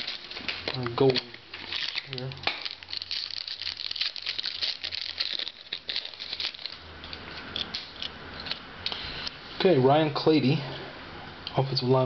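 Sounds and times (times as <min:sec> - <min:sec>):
foil pack crinkling and tearing: 0:00.0 - 0:06.8.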